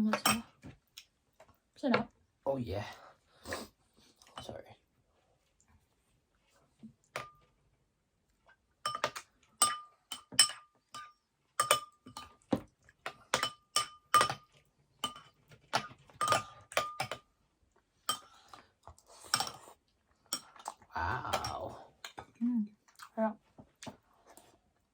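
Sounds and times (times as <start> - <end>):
spoon clinking against a bowl: 0.1 - 0.5, 8.8 - 12.4, 13.3 - 17.2, 18.1 - 18.4, 19.3 - 19.6.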